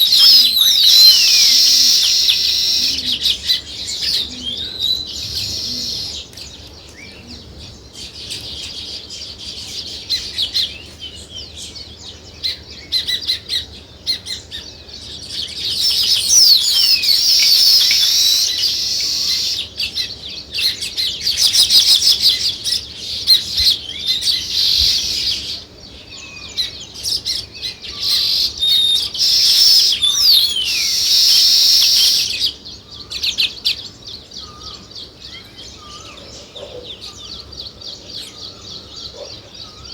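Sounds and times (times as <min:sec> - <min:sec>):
flock of sparrows chirping: 0:00.0 - 0:39.9.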